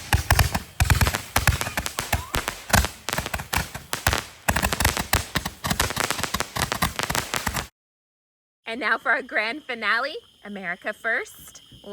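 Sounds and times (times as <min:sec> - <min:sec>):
fireworks crackling: 0:00.0 - 0:07.7.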